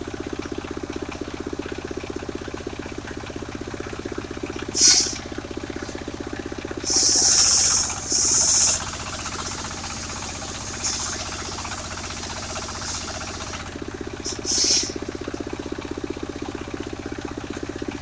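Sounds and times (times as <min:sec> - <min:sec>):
sawmill engine running: 0:00.0 - 0:18.0
loud hissing bursts: 0:04.7 - 0:05.2, 0:06.8 - 0:13.6, 0:14.2 - 0:15.0.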